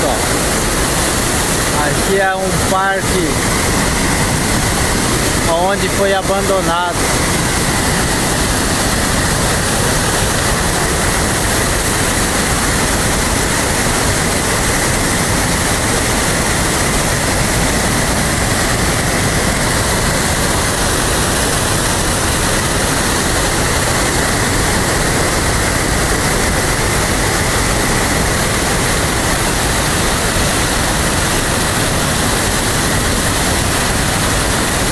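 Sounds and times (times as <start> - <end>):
running water rushing: 0.0 - 34.9.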